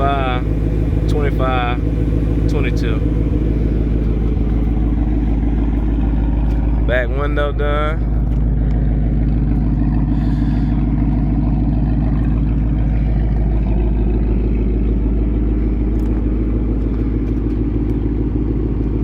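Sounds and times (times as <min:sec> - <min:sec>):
engine idling: 0:00.0 - 0:19.0.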